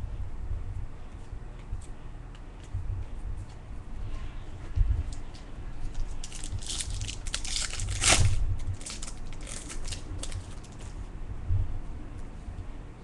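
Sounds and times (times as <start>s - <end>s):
card pack wrapper crinkling: 5.9s - 10.9s.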